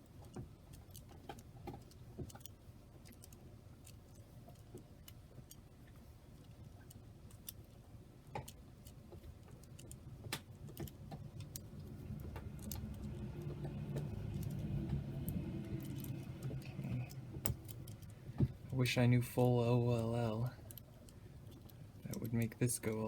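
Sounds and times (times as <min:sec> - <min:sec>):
small puzzle cube clicking: 0:08.8 - 0:18.2
low hum: 0:10.7 - 0:23.0.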